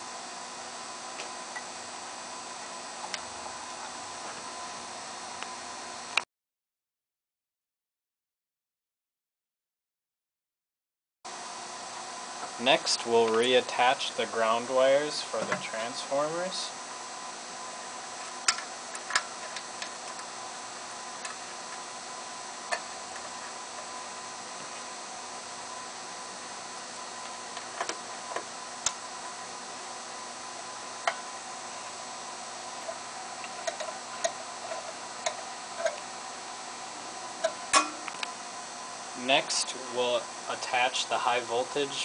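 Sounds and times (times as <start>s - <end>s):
faint steady hum: 0.0s - 6.2s, 11.3s - 42.0s
steady background hiss: 11.4s - 42.0s.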